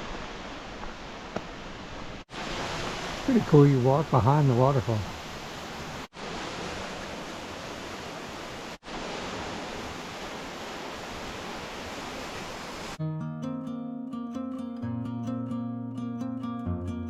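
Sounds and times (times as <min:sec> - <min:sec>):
waterfall rushing: 0:00.0 - 0:13.0
plucked-string music: 0:13.0 - 0:17.0.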